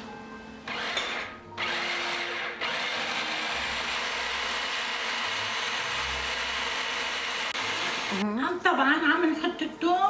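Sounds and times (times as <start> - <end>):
food processor grinding: 0.7 - 8.2.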